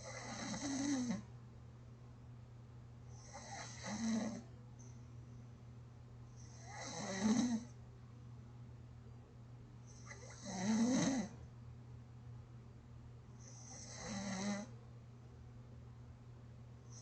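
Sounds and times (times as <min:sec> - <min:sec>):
person snoring gently: 0:00.0 - 0:01.2, 0:03.2 - 0:04.4, 0:06.5 - 0:07.7, 0:10.1 - 0:11.4, 0:13.5 - 0:14.7.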